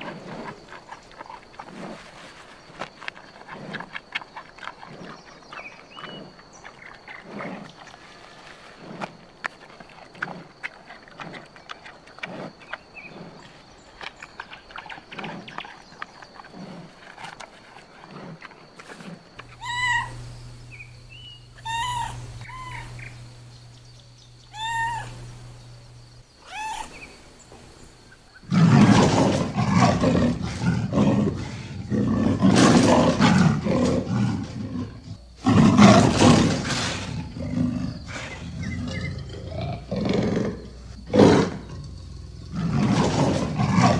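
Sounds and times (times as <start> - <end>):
lion mewing calls: 18.0 - 27.2
lion roaring and growling: 28.4 - 43.9.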